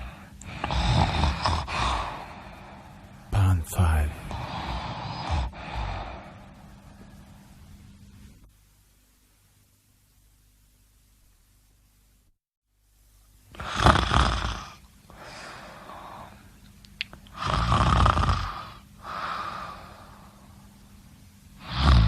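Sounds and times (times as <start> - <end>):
person snoring: 0.0 - 3.0, 3.8 - 6.6, 13.5 - 16.4, 17.3 - 20.5, 21.6 - 22.0
soft breathy sound: 4.1 - 7.7.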